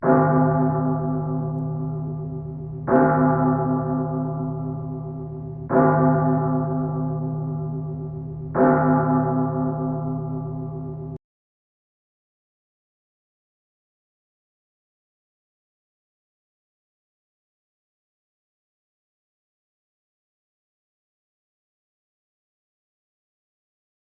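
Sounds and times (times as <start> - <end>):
large metal bell tolling: 0.0 - 11.2.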